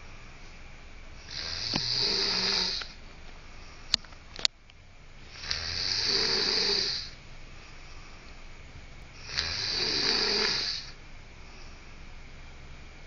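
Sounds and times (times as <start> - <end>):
rasping snores: 1.3 - 3.0, 5.3 - 7.2, 9.2 - 11.0.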